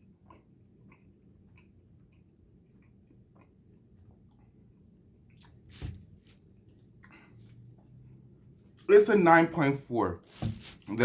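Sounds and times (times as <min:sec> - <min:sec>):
person chewing gummy candy: 0:00.0 - 0:05.8.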